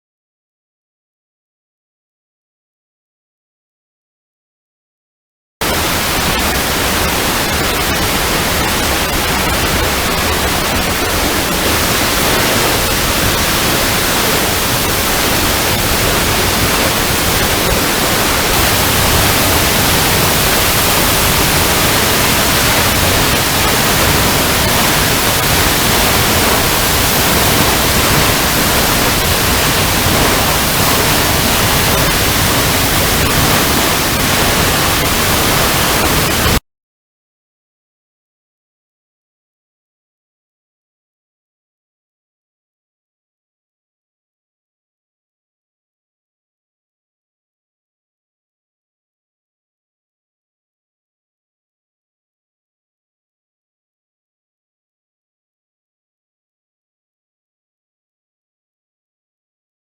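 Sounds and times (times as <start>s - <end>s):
waterfall rushing over rocks: 5.6s - 36.6s.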